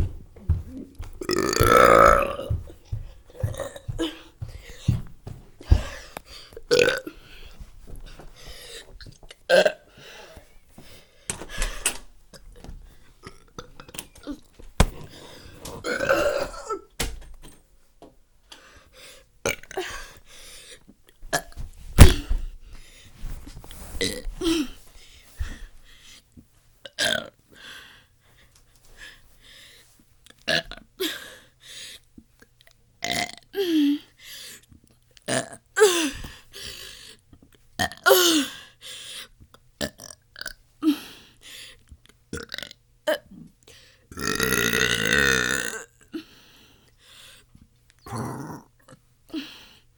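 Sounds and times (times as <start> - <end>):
person burping: 1.2 - 2.6, 3.4 - 4.2, 6.7 - 7.2, 9.5 - 9.9, 15.8 - 16.9, 19.5 - 20.1, 24.0 - 24.7, 26.9 - 27.4, 30.5 - 30.8, 33.0 - 33.4, 35.3 - 36.1, 37.8 - 38.5, 44.1 - 46.1, 48.0 - 49.0.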